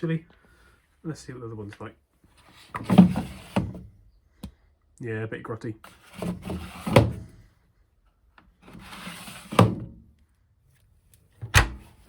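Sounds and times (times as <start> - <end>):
plastic drawer sliding and shutting: 2.6 - 3.8, 5.9 - 7.4, 8.6 - 10.0, 11.4 - 12.0.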